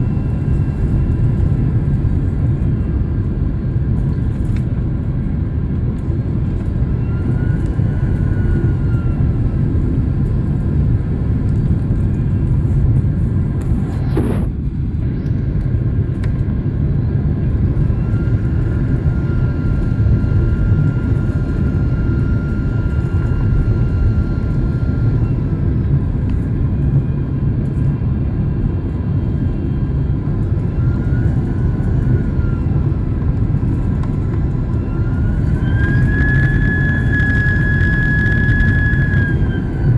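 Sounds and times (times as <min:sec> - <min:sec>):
airliner cabin rumble: 0:00.0 - 0:39.9
faint engine whine: 0:00.0 - 0:39.9
falling whistle: 0:34.8 - 0:39.9.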